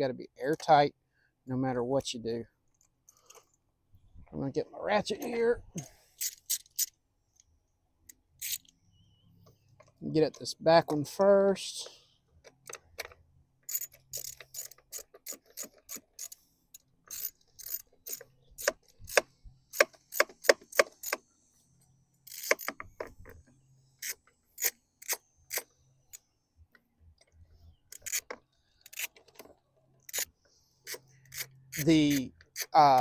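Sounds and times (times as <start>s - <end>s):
socket ratchet clicking: 6.2s - 7.0s, 8.4s - 8.8s, 12.6s - 16.4s, 17.1s - 21.2s, 22.3s - 23.2s, 24.0s - 26.2s, 27.9s - 29.5s, 30.1s - 33.0s.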